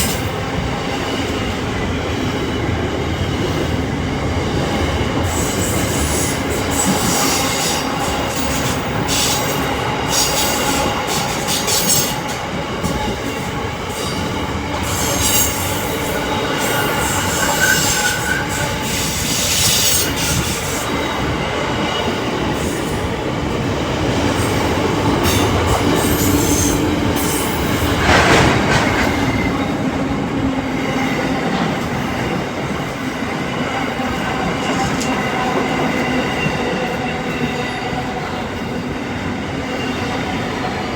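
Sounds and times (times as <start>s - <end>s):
clickety-clack over rail joints: 0.0s - 39.0s
train rolling: 0.0s - 40.9s
wheels squealing on rails: 4.8s - 23.1s, 24.3s - 29.8s.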